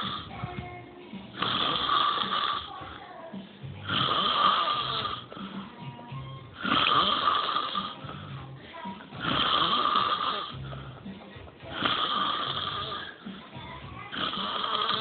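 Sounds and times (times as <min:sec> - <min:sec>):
man snoring loudly: 0:00.0 - 0:00.3, 0:01.3 - 0:02.8, 0:03.8 - 0:05.7, 0:06.6 - 0:08.6, 0:09.2 - 0:11.0, 0:11.7 - 0:13.3, 0:14.1 - 0:15.0.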